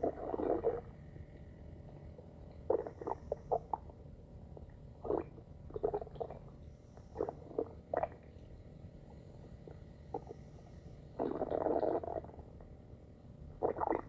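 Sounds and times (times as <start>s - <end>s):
stomach growling gurgles: 0.0s - 1.0s, 1.9s - 8.5s, 9.5s - 10.5s, 11.1s - 12.7s, 13.6s - 14.0s.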